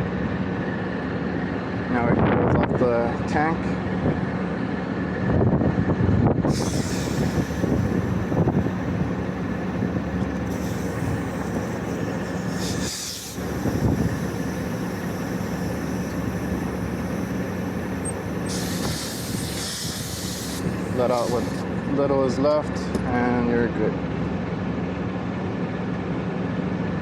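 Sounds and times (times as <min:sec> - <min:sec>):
hvac machinery humming: 0:00.0 - 0:27.0
refrigerant hissing from hoses: 0:06.5 - 0:22.0.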